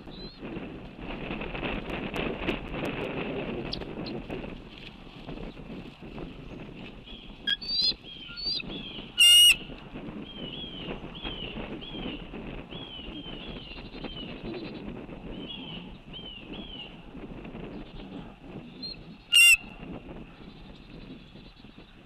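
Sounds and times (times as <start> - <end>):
bird calls: 7.1 - 9.6, 18.7 - 19.6.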